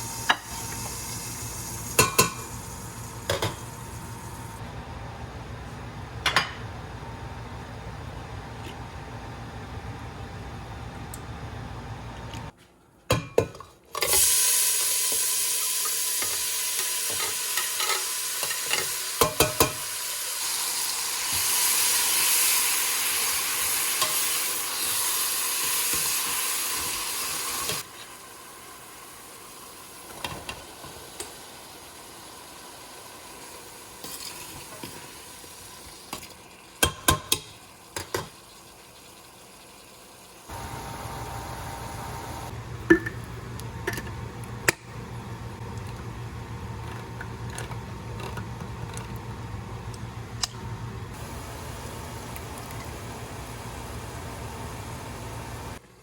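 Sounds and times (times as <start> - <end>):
food sizzling in a pot: 0.0 - 4.6, 14.0 - 42.6, 51.2 - 55.8.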